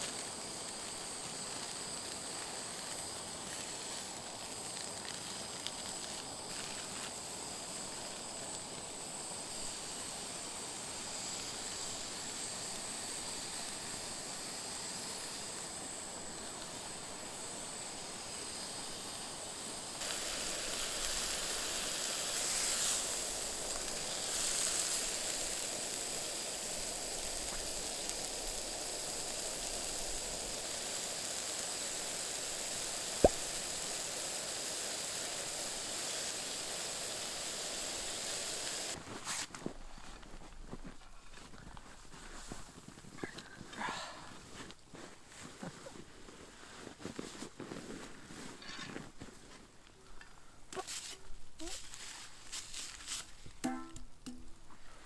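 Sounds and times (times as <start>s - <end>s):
steak sizzling over a fire: 0.0s - 39.5s, 50.8s - 53.9s
sharp pop of fire: 33.1s - 34.0s.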